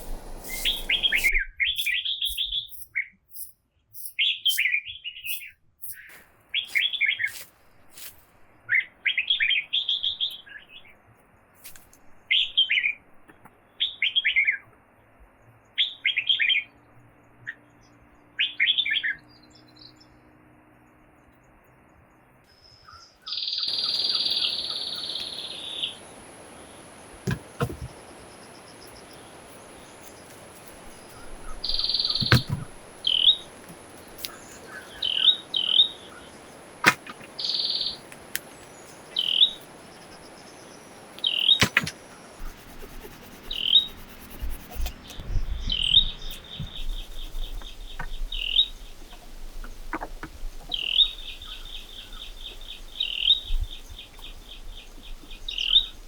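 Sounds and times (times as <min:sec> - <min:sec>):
buzzy bird calls: 0:00.0 - 0:07.4, 0:22.9 - 0:56.0
birds chirping: 0:00.0 - 0:11.5, 0:15.6 - 0:56.0.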